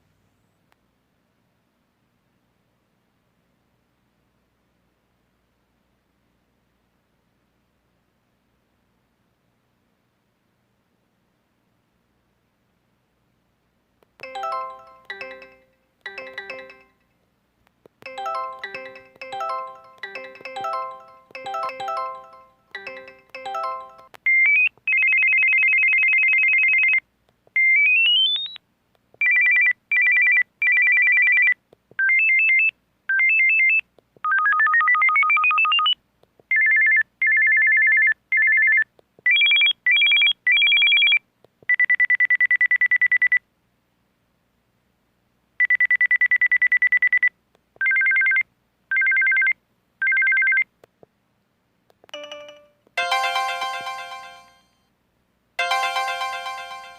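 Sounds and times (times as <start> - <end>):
phone ringtone beeping: 14.2 - 17.0, 18.1 - 24.2, 52.1 - 54.7, 55.6 - 56.9.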